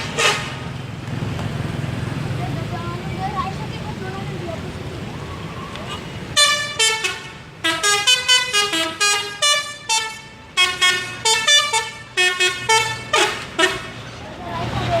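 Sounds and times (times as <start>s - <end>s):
musical bus horn tune: 0.0s - 0.7s, 6.3s - 14.0s.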